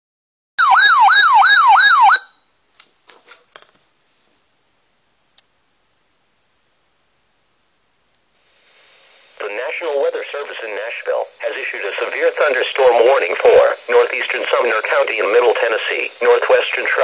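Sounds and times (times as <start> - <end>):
weather radio warbling alarm tone: 0.6 - 2.4, 9.4 - 17.0.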